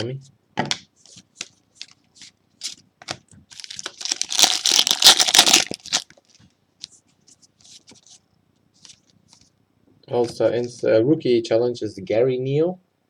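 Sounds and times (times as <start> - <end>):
foil wrapper tearing and crinkling: 3.5 - 6.4.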